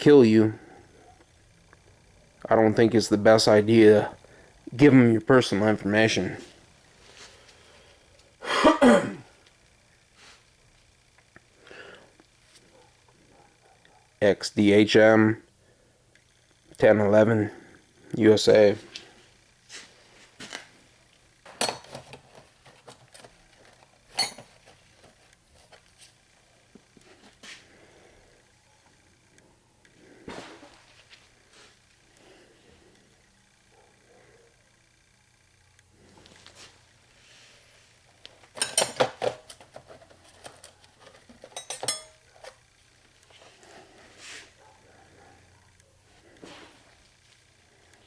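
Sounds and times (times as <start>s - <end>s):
steel hand tools clinking: 21.6s - 22.0s, 24.1s - 24.5s, 41.4s - 42.2s
metal hand tools clattering: 24.1s - 24.6s, 38.6s - 40.0s, 41.1s - 42.6s.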